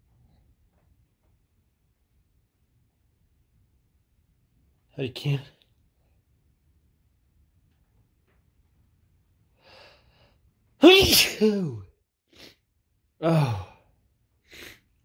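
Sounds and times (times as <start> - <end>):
man sneezing: 10.8 - 12.6.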